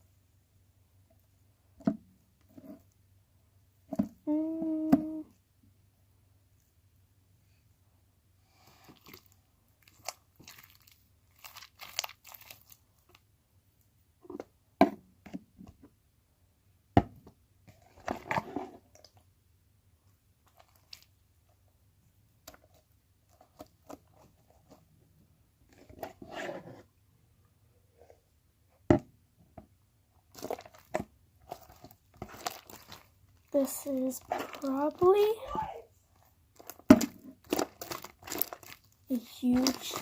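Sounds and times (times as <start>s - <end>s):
slime squished by hand: 8.8s - 13.1s, 30.3s - 35.4s, 36.6s - 40.0s.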